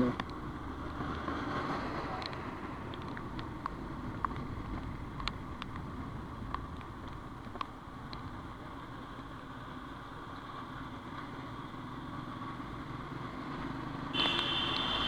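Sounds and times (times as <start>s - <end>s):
motorcycle engine and road noise: 0.0s - 15.0s
short high-pitched horn: 14.2s - 15.0s.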